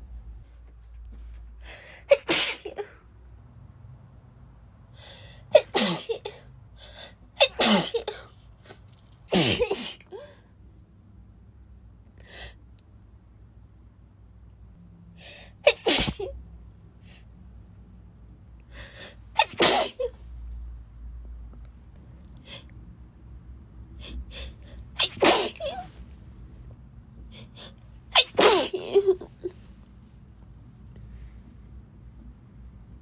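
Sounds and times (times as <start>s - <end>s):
short catching breaths: 1.5s - 2.1s, 18.7s - 19.3s
woman sneezing: 2.1s - 3.0s, 5.6s - 6.4s, 7.4s - 8.3s, 9.3s - 10.2s, 15.6s - 16.4s, 19.4s - 20.2s, 25.0s - 26.0s, 28.2s - 29.6s.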